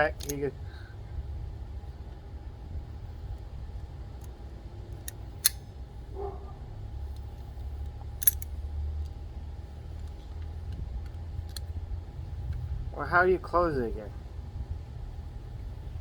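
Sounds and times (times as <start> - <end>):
locking pliers clicking: 0.0 - 0.5, 4.2 - 5.7, 8.2 - 9.2, 11.0 - 11.7
steady low rumble: 0.0 - 16.0.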